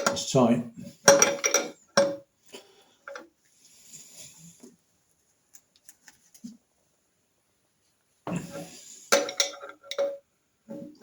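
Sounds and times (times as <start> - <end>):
faint knocks and scrapes: 0.8 - 6.8, 7.8 - 11.0
metal tools clicking and clinking: 1.0 - 2.2, 9.1 - 10.2.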